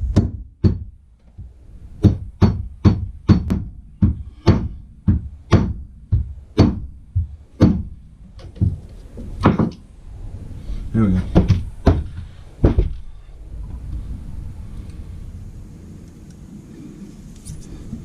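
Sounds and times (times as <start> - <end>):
rubber mallet striking pipe: 0.1 - 1.0, 2.0 - 7.9.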